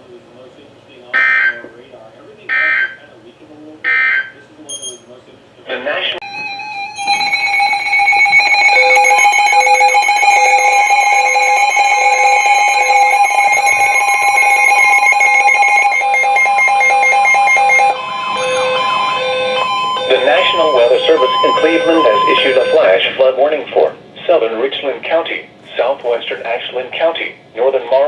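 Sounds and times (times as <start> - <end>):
weather alert radio alarms: 1.2 - 1.6, 6.2 - 23.6.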